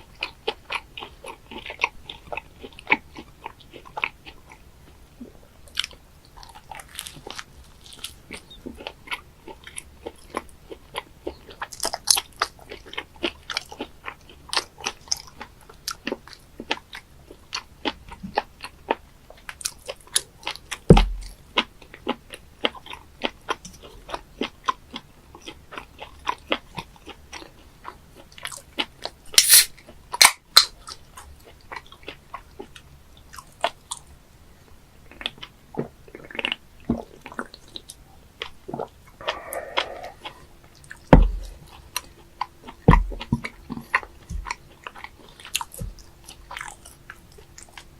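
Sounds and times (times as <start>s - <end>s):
chewing and biting octopus: 5.8s - 34.1s, 38.4s - 47.8s.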